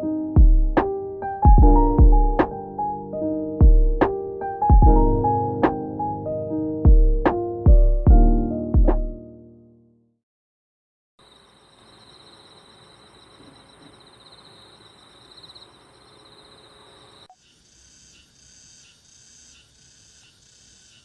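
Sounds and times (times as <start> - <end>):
high insect chirp: 11.2 - 21.0
high insect trill: 11.2 - 21.0.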